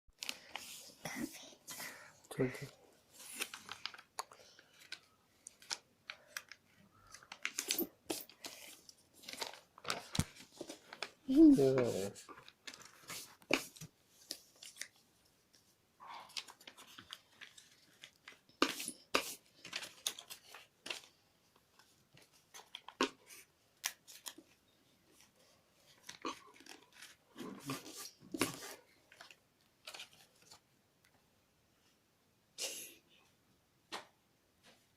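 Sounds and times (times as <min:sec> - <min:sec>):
paper being folded and creased: 0:03.1 - 0:15.1, 0:16.3 - 0:24.6, 0:25.2 - 0:30.6.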